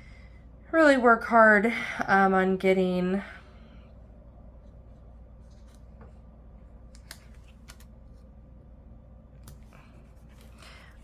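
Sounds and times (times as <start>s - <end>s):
low room hum: 0.0s - 11.0s
paper rustling: 4.6s - 6.2s.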